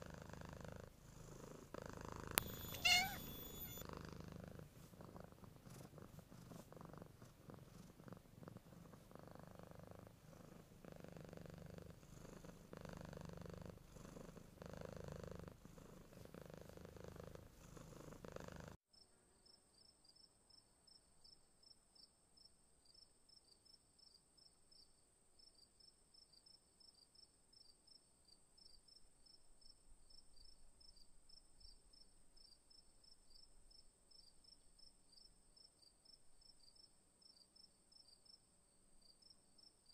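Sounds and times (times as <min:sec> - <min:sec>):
cat purring: 0:00.0 - 0:18.8
insects chirping: 0:02.3 - 0:03.8.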